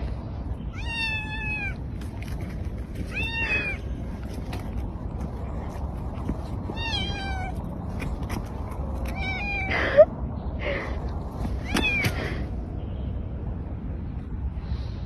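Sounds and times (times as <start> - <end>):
cat meowing: 0.7 - 1.8, 3.1 - 3.9, 6.7 - 7.6, 9.1 - 9.8.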